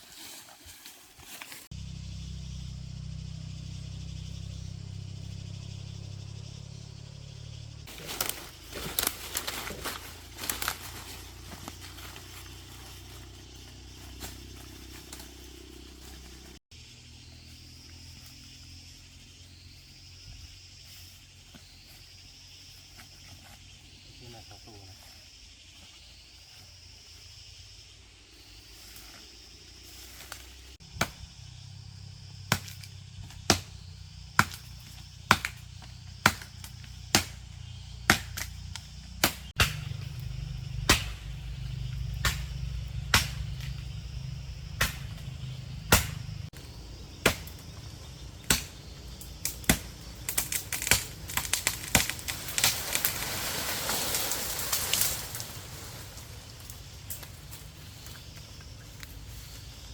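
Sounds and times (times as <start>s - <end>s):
sharp strikes: 39.2s - 40.2s, 40.8s - 41.4s, 45.9s - 46.3s.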